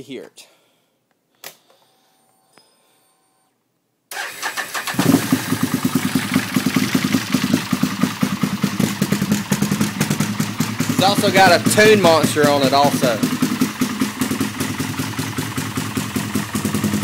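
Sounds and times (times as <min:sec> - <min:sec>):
atv engine starter cranking: 0:04.1 - 0:07.5
atv engine idling unevenly: 0:05.0 - 0:17.0.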